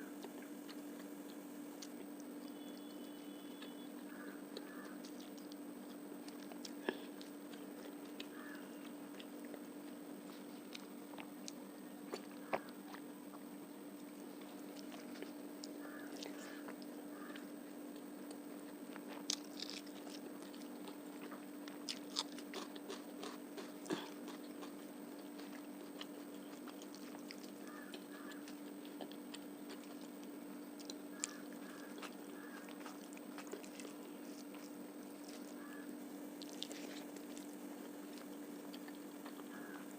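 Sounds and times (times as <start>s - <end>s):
chewing and biting food: 0.0s - 39.9s
steady low hum: 0.0s - 39.9s
wet clicks and small crunches: 18.0s - 35.7s, 36.4s - 39.8s.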